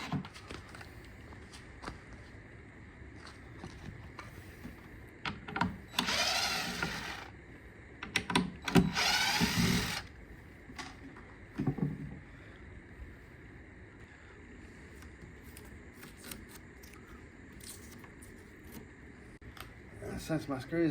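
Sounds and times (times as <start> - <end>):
cordless drill whining: 0.0 - 0.2, 5.9 - 7.3, 8.6 - 10.1.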